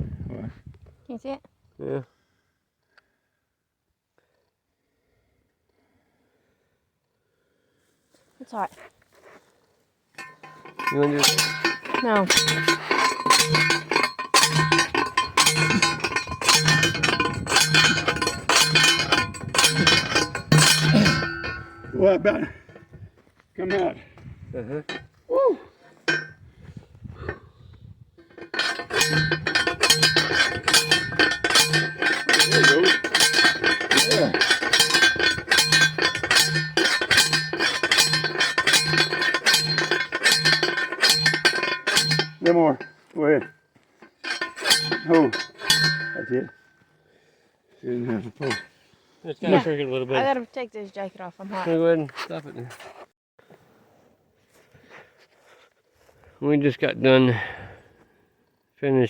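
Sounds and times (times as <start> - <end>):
hammer clanging on metal: 10.2 - 22.8, 24.8 - 25.1, 26.0 - 26.4, 28.2 - 46.6, 48.0 - 48.7
metal striking metal: 10.2 - 22.8, 26.1 - 26.4, 28.2 - 46.6, 48.0 - 48.7.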